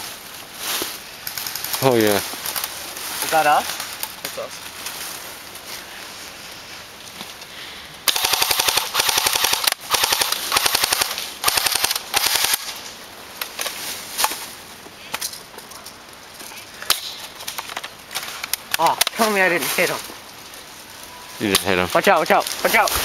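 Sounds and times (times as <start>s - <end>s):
airsoft gun firing full auto: 8.1s - 12.7s.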